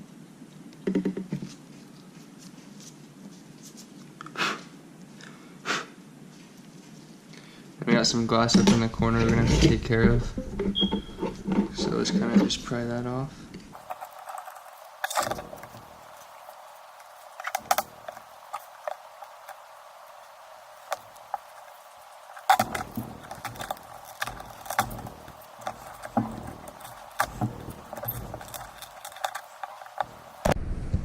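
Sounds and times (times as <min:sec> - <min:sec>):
light knocks and handling thumps: 0:13.5 - 0:30.6.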